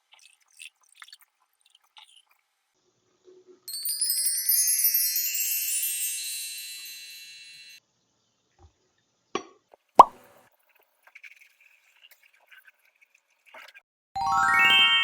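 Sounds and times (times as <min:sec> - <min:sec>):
high bright chime tones: 0:03.7 - 0:07.8, 0:14.2 - 0:15.0.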